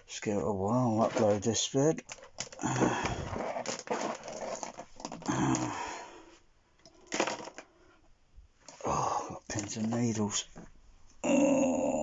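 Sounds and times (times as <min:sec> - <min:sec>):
man breathing heavily: 0:02.6 - 0:03.5, 0:05.3 - 0:06.4, 0:08.8 - 0:09.5
man groaning: 0:05.3 - 0:06.1, 0:11.2 - 0:12.0.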